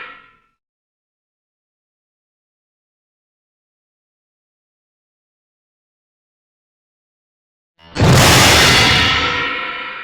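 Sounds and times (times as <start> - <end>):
cartoon crash: 8.0 - 9.6.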